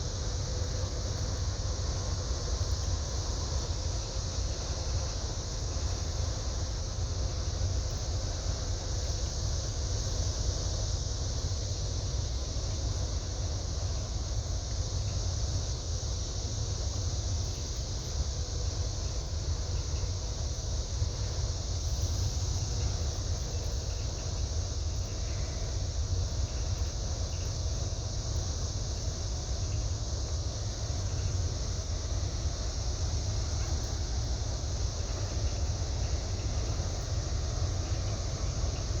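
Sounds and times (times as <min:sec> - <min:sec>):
high buzz of insects: 0:00.0 - 0:39.0.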